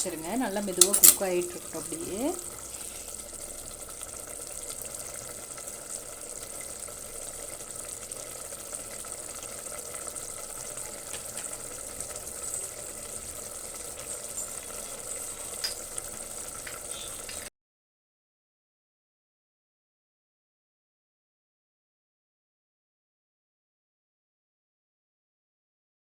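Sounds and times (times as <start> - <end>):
food simmering in a pot: 0.0 - 17.5.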